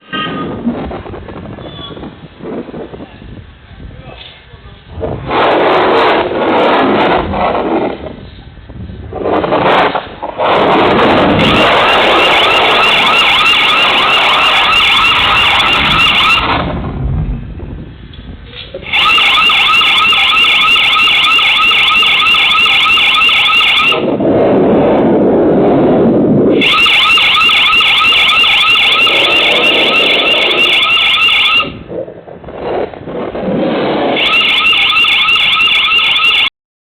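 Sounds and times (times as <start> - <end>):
low-pitched sound: 0.0 - 23.0
warbling security alarm: 9.6 - 16.7, 18.8 - 24.2, 26.5 - 31.9, 34.1 - 36.5.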